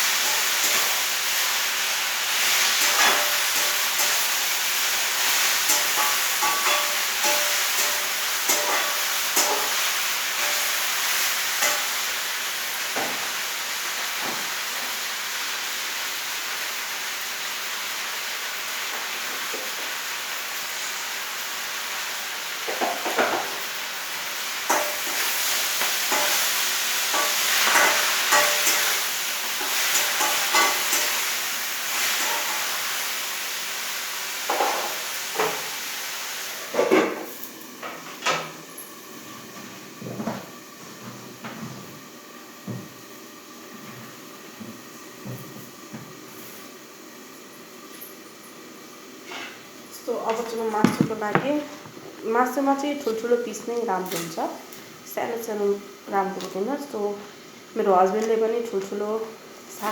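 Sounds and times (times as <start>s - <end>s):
greens sizzling in a pan: 0.0s - 59.9s
spatula knocking and scraping pan: 5.7s - 9.8s.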